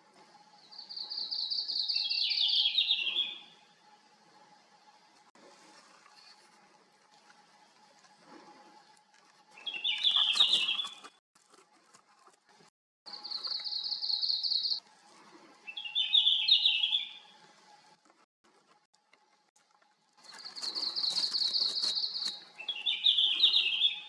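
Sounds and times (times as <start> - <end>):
bird warbling song: 0.6 - 3.6, 9.5 - 11.2, 13.1 - 14.8, 15.6 - 17.4, 20.2 - 24.0
bird high trill: 9.6 - 11.0, 15.7 - 17.3.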